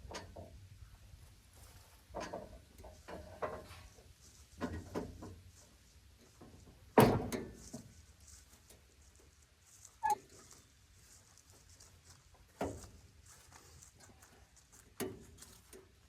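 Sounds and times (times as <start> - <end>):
brief squeak: 10.0 - 10.2.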